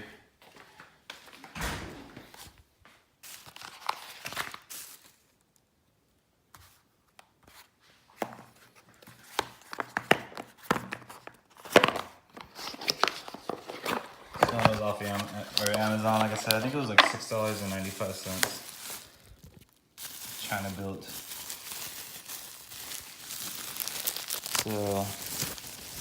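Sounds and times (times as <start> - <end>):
objects rustling and clicking: 8.2 - 26.0.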